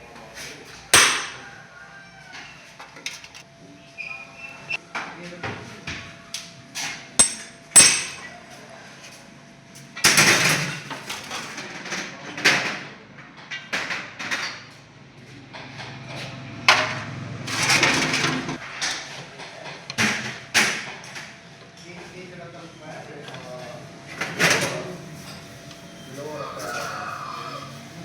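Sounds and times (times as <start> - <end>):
hand tools knocking on metal: 1.0 - 1.4, 7.2 - 8.3
rasping scraping noises: 24.7 - 28.0.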